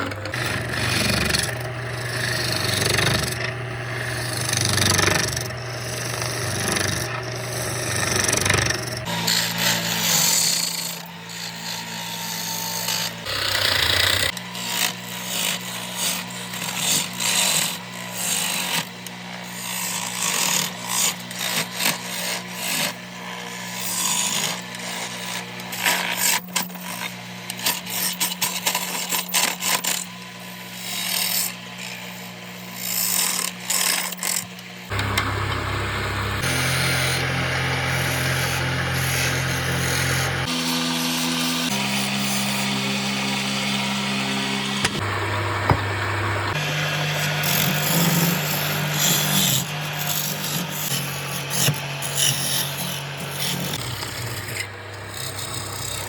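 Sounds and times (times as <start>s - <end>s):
cutter clattering and scraping wood: 0.0s - 19.2s, 32.8s - 56.0s
power tool motor hum: 0.0s - 23.1s, 23.8s - 56.0s.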